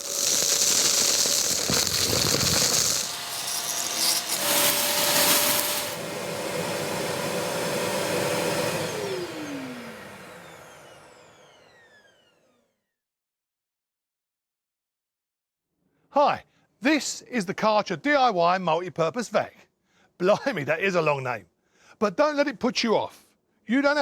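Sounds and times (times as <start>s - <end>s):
motor winding down: 0.0s - 6.0s
vacuum cleaner whining: 0.0s - 12.6s.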